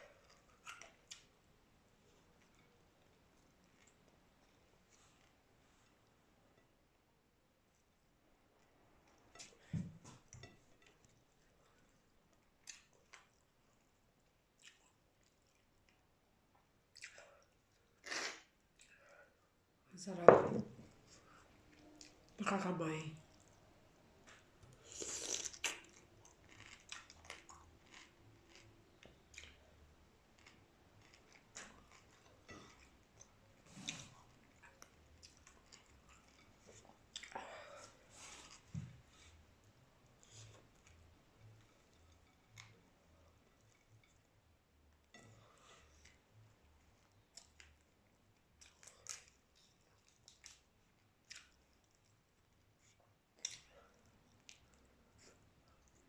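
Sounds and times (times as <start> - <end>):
chewing and lip-smacking: 14.6 - 16.0, 16.9 - 19.0, 25.0 - 37.4, 46.0 - 56.0
shrimp being eaten crunches: 24.8 - 28.7.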